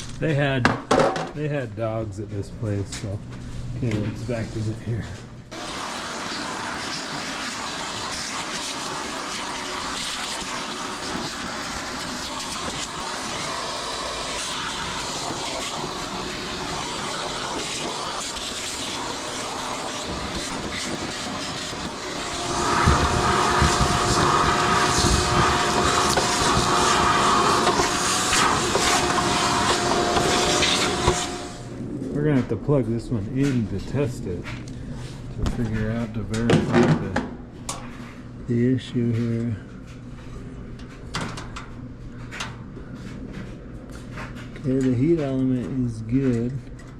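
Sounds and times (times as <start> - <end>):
vacuum cleaner running: 4.9 - 32.0.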